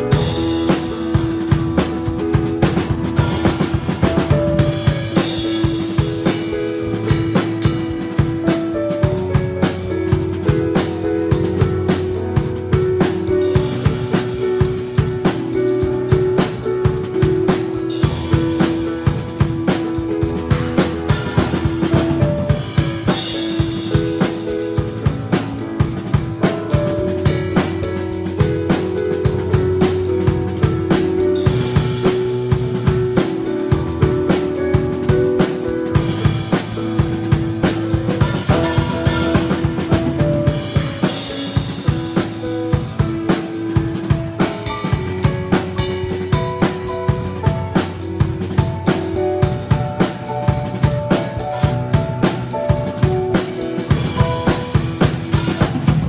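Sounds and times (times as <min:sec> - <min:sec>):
drum kit playing a beat: 0:00.0 - 0:56.0
band holding notes: 0:16.9 - 0:56.0.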